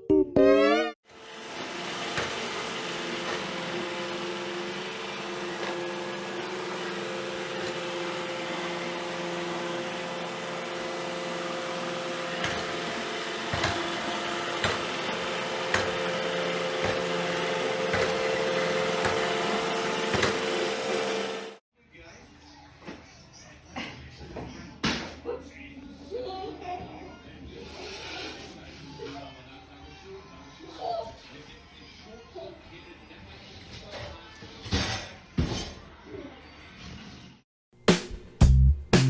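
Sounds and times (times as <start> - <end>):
machine hum: 1.1 - 21.6.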